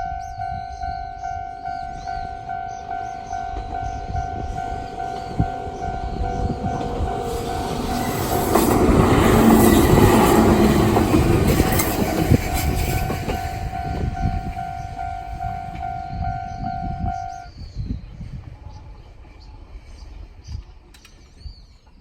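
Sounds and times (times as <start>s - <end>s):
railway crossing bell ringing: 0.0s - 17.5s
train wheels passing: 0.2s - 22.0s.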